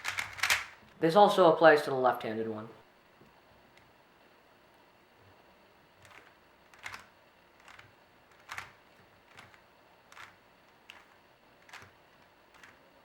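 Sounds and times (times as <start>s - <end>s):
rubik's cube plastic clicks: 0.0s - 1.0s, 6.0s - 12.8s.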